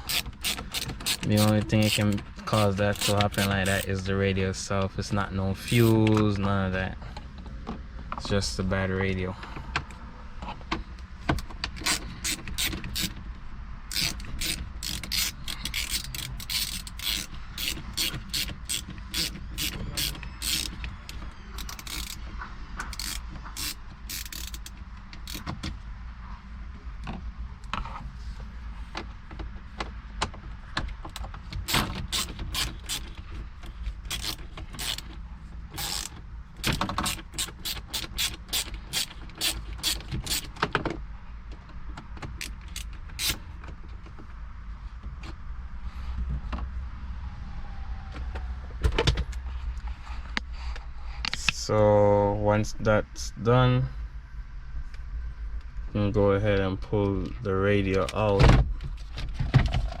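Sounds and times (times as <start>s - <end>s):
ratchet screwdriver clicking: 0.0s - 3.9s, 11.8s - 13.2s, 13.9s - 22.2s, 22.9s - 25.5s, 31.7s - 33.2s, 34.1s - 35.1s, 35.8s - 40.5s, 42.4s - 43.4s.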